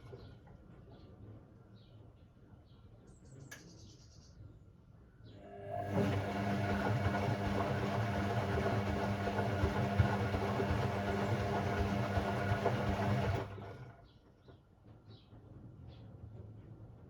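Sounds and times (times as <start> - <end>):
washing machine motor humming: 5.4 - 14.0.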